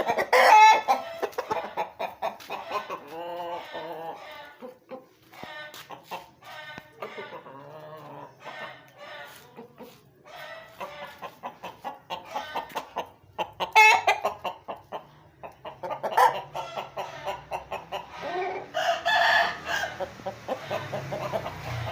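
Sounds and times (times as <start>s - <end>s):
chickens clucking: 0.0s - 21.9s
rooster crowing: 18.4s - 21.0s.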